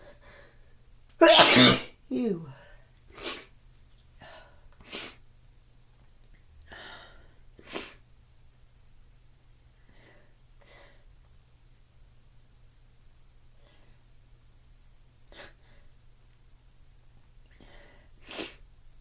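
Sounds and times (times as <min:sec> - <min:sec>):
quiet breaths: 0:00.0 - 0:00.9, 0:04.2 - 0:05.2, 0:06.6 - 0:08.0, 0:09.7 - 0:11.3, 0:13.4 - 0:14.3, 0:15.2 - 0:16.1, 0:17.5 - 0:18.7
woman sneezing: 0:01.2 - 0:02.6.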